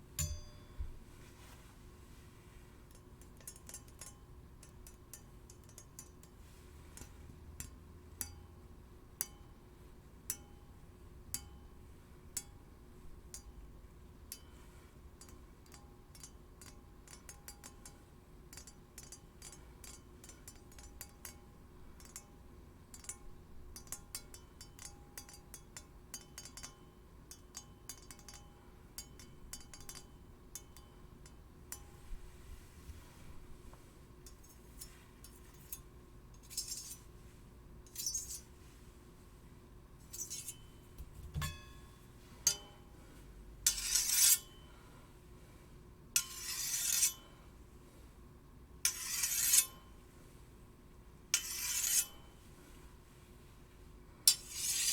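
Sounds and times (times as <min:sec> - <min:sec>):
steel blades clinking: 0:00.2 - 0:00.9, 0:34.2 - 0:37.1, 0:37.9 - 0:38.5, 0:40.0 - 0:42.8, 0:43.6 - 0:44.7, 0:46.2 - 0:47.3, 0:48.9 - 0:49.9, 0:51.4 - 0:52.4, 0:54.3 - 0:54.9
faint ringing tone: 0:00.2 - 0:01.1.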